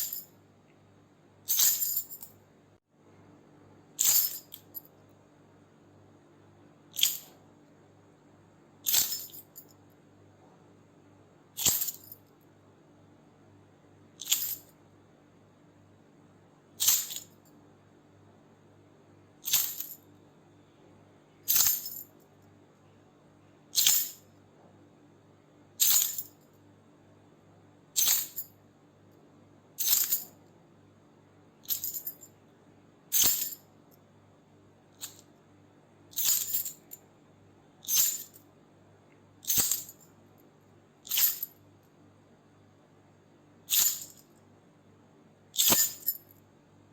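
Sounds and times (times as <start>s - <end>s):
faint steady hum: 0.0s - 46.9s
keys jingling: 1.5s - 2.3s, 4.0s - 4.8s, 7.0s - 7.3s, 8.9s - 9.5s, 14.2s - 14.6s, 19.5s - 20.0s, 31.7s - 32.2s, 36.2s - 36.9s, 37.9s - 38.4s, 39.5s - 39.9s, 41.1s - 41.5s, 43.7s - 44.2s, 45.6s - 46.2s.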